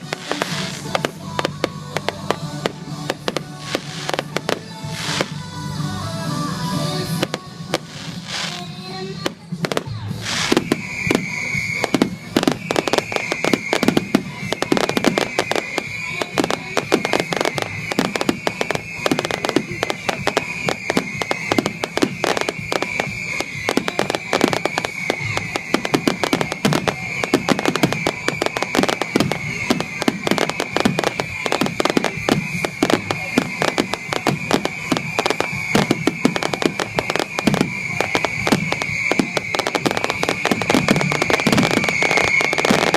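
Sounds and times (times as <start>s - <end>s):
fireworks explosions and crackling: 0.0s - 42.9s.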